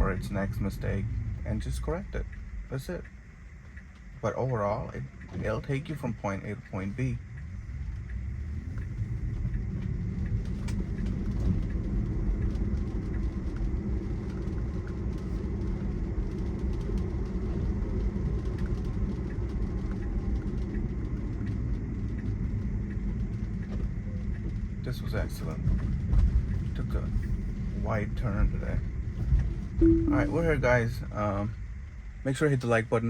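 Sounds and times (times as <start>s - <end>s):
faint ticks: 2.2s - 4.2s, 7.2s - 24.7s
road and tyre rumble: 7.2s - 24.8s.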